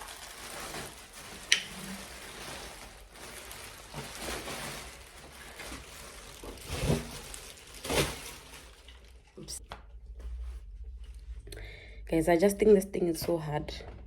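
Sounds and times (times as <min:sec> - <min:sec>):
packaging crinkling: 0:00.0 - 0:09.4.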